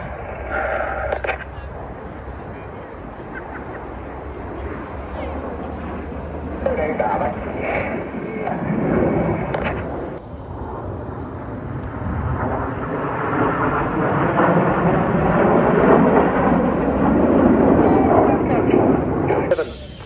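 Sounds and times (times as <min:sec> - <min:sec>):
jet engines roaring: 0:00.0 - 0:20.0.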